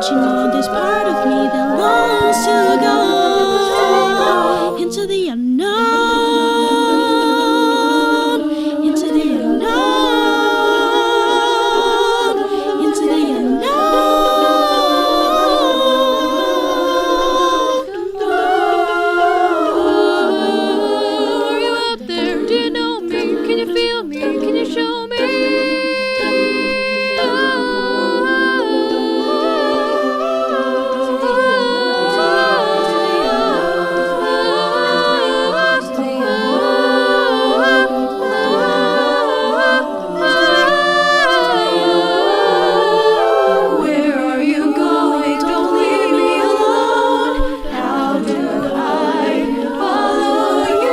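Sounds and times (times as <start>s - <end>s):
a cappella group singing: 0.0s - 50.9s.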